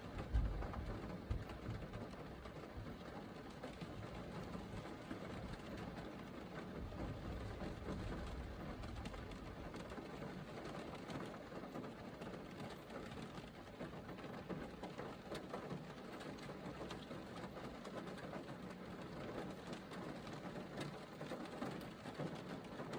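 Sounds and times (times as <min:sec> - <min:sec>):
steady rain falling: 0:00.0 - 0:22.9.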